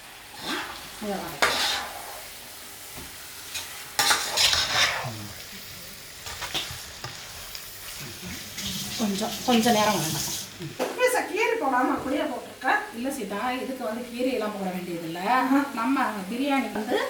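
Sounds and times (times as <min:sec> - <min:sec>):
chicken sizzling in hot oil: 0:00.0 - 0:11.7
stirring in a pot: 0:00.2 - 0:10.8.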